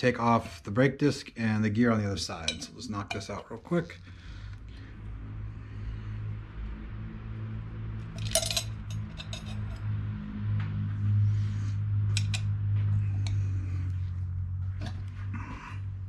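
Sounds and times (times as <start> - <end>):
tools clinking on metal: 2.4 - 3.6, 8.2 - 9.8, 12.1 - 12.5
low hum: 2.4 - 16.0.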